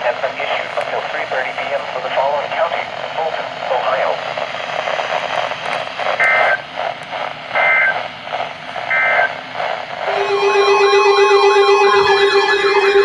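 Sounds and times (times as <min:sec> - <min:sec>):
radio static: 0:00.0 - 0:09.8
music with siren-like tones: 0:10.1 - 0:13.0.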